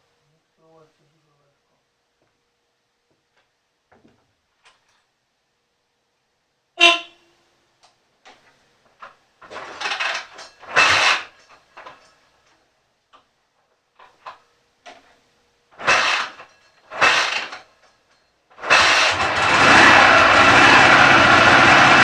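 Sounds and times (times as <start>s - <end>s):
engine being cranked: 9.5s - 12.0s, 15.8s - 17.8s, 18.6s - 22.0s
engine running loudly: 18.6s - 22.0s.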